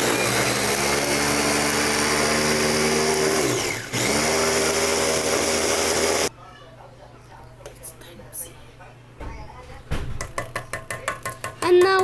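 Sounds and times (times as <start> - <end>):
electric blender motor running: 0.0 - 6.3.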